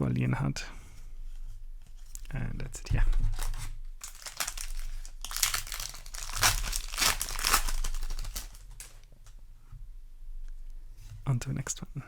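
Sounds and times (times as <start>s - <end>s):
wrapper crinkling and tearing: 3.4s - 9.1s.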